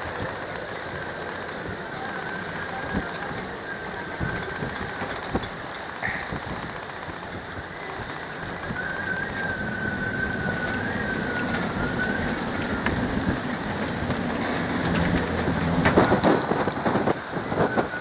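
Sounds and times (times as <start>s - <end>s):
distant aircraft engine whine: 0.0s - 18.0s
wind buffeting microphone: 0.0s - 18.0s.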